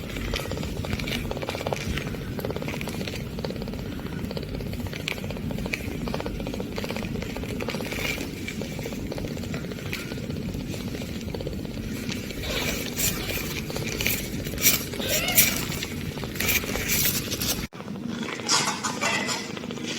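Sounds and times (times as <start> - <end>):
kitten purring: 0.0 - 17.7.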